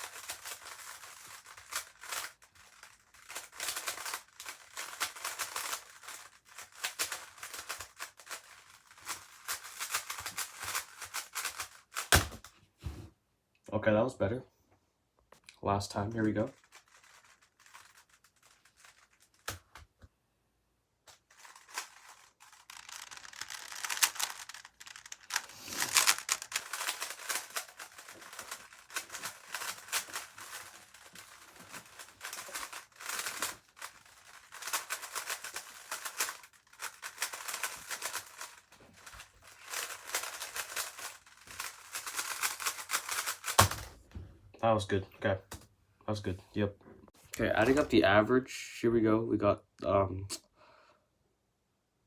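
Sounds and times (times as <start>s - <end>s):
puzzle cube clicking: 21.3s - 43.9s.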